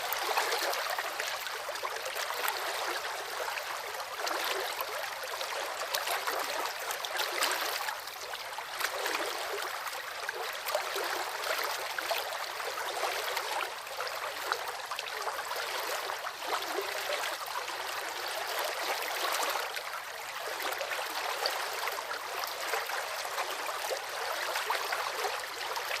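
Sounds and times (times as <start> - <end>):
river water rushing over rocks: 0.0 - 3.5.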